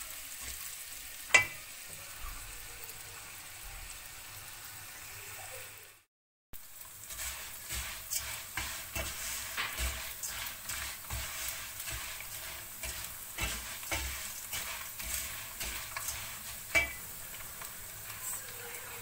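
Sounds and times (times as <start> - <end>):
food sizzling in a frying pan: 0.0 - 19.0
utensil scraping a pan: 7.0 - 19.0.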